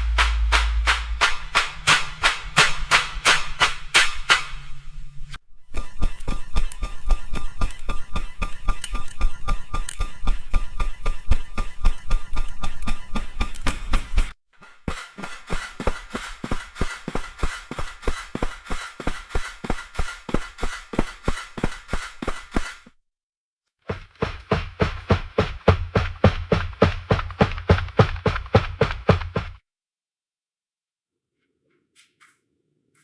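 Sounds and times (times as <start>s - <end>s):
rapid tapping: 0.0s - 4.6s, 5.7s - 14.3s, 23.9s - 29.6s.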